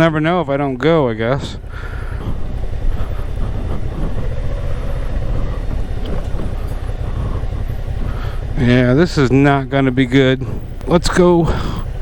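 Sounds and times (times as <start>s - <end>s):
motorcycle engine running slowly: 0.0s - 12.0s
wind noise on microphone: 1.4s - 9.3s, 10.4s - 12.0s.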